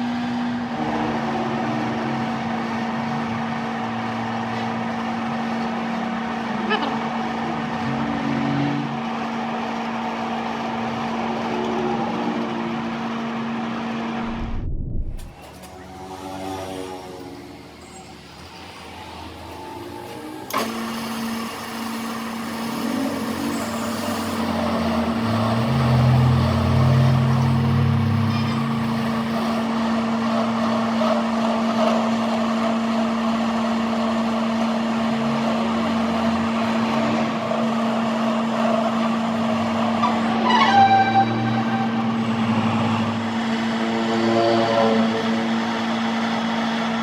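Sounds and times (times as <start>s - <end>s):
engine humming: 0.0s - 47.0s
deep rumble: 11.1s - 15.5s.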